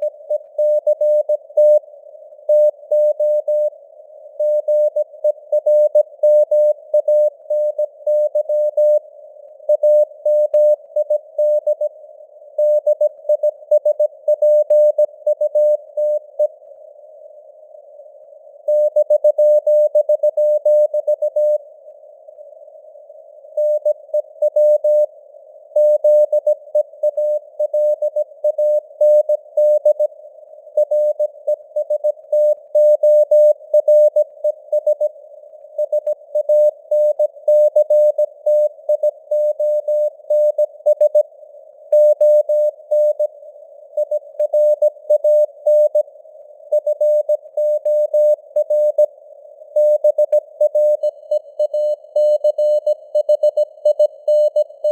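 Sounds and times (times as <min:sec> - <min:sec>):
morse code tone: 0:49.8 - 0:54.9.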